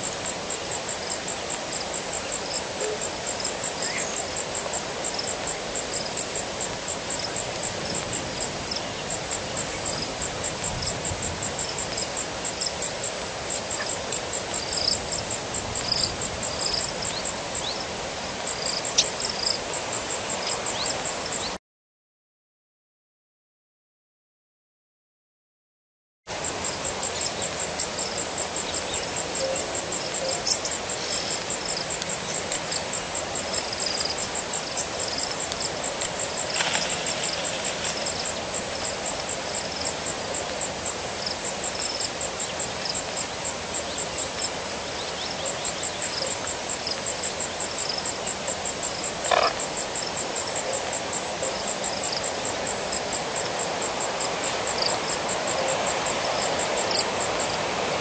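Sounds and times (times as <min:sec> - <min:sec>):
insects trilling: 0:00.0 - 0:21.6, 0:26.3 - 0:58.0
steady hiss: 0:00.0 - 0:21.6, 0:26.3 - 0:58.0.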